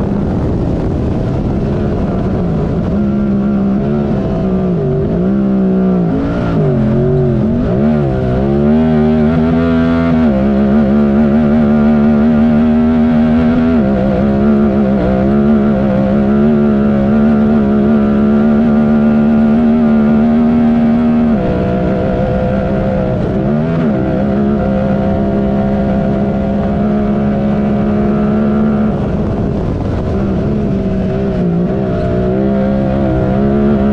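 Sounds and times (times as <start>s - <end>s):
engine revving hard: 3.2s - 29.4s.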